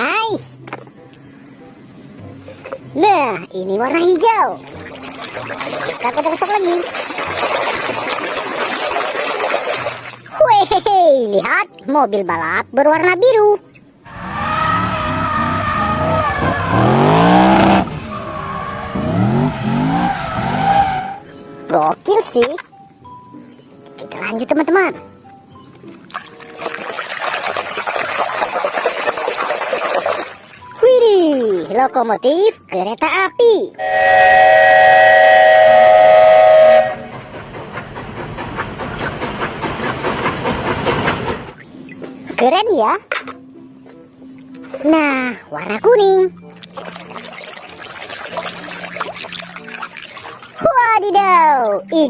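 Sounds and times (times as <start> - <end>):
race car engine revving: 14.1 - 21.2
steam locomotive whistle: 33.8 - 37.8
steam train chugging: 33.8 - 41.6.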